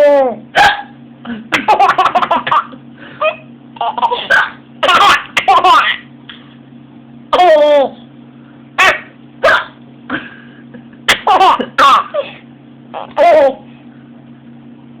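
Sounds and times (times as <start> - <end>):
person hiccuping: 0.6 - 1.6, 4.1 - 5.2, 8.8 - 10.3
person laughing: 1.3 - 5.8, 10.1 - 12.4.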